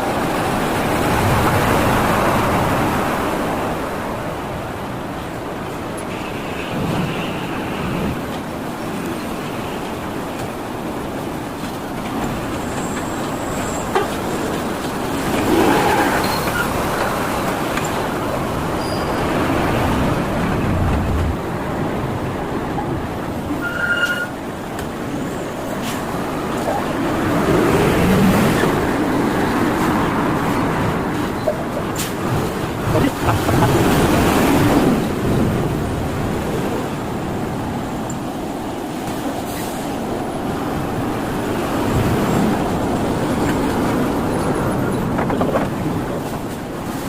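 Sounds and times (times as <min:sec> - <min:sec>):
road traffic passing: 0:00.0 - 0:23.7, 0:24.3 - 0:46.8
short high beep: 0:23.6 - 0:24.3.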